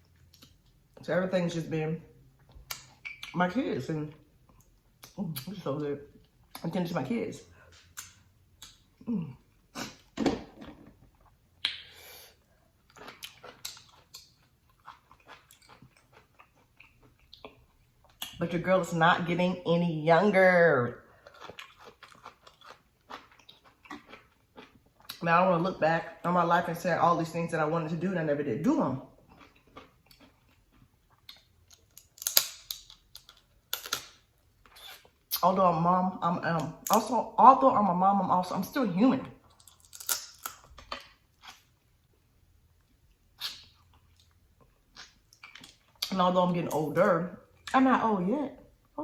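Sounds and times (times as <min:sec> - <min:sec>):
wet lip smacks and clicks: 0:11.6 - 0:11.9
chewing: 0:12.8 - 0:18.4, 0:21.2 - 0:25.2, 0:29.2 - 0:35.1
crab shell cracking: 0:31.7 - 0:34.2, 0:39.5 - 0:41.2.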